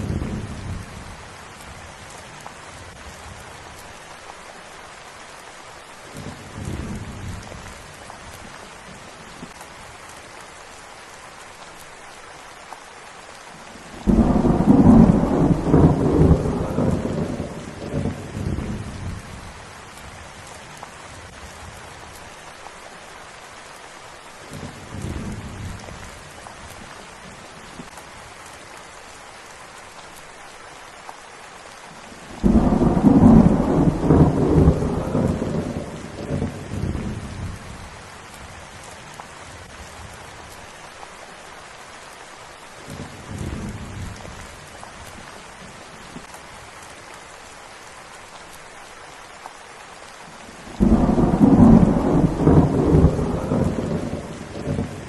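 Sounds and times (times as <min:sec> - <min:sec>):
steady rain: 0:00.0 - 0:55.0
thunder: 0:14.0 - 0:19.2, 0:32.4 - 0:37.5, 0:50.8 - 0:55.0.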